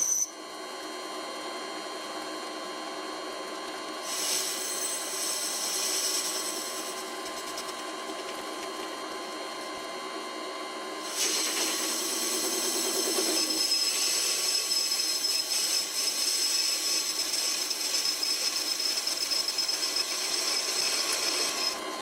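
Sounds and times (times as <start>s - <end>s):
lathe hum: 3.8s - 22.0s
lathe tool cutting hiss: 4.0s - 7.7s, 11.0s - 22.0s.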